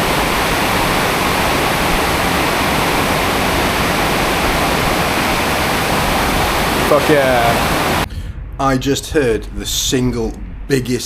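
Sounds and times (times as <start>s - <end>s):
heavy rain pouring: 0.0s - 8.3s.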